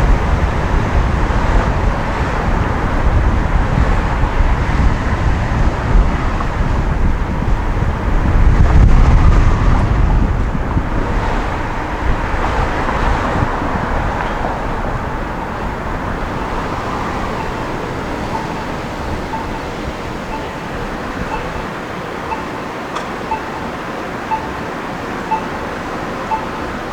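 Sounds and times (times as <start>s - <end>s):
road and traffic noise: 0.0s - 26.9s.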